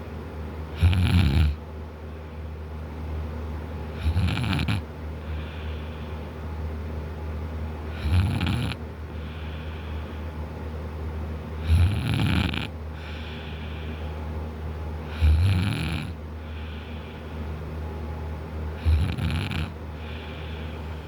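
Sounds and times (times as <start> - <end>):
man snoring loudly: 0.8 - 1.6, 4.0 - 4.8, 7.9 - 8.8, 11.6 - 13.3, 15.1 - 16.2, 18.8 - 19.8
soft breathing: 5.2 - 6.4, 9.1 - 10.4, 12.9 - 14.3, 16.4 - 17.6, 18.8 - 21.0.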